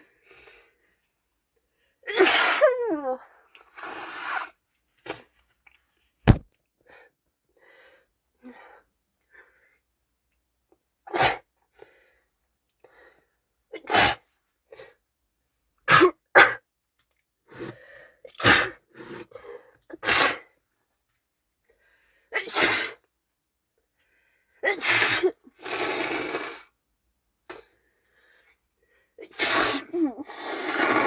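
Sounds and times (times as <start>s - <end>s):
woman sneezing: 2.1s - 3.2s, 22.4s - 23.0s, 24.6s - 25.4s, 29.2s - 31.0s
sharp thump: 6.3s - 6.5s.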